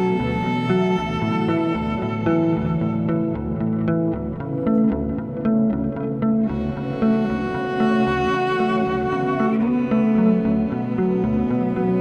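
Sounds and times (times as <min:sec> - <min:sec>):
background music with bowed strings: 0:00.0 - 0:12.0.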